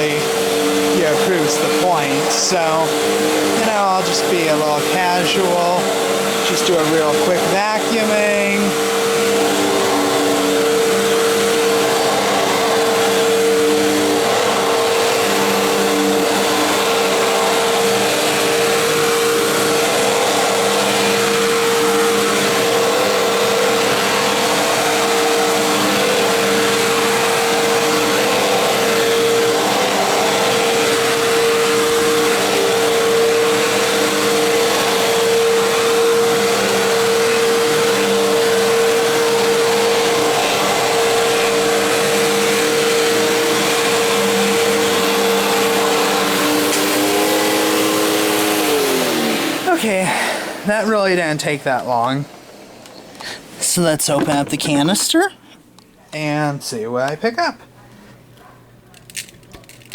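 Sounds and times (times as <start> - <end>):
vacuum cleaner motor whine: 0.0 - 59.9.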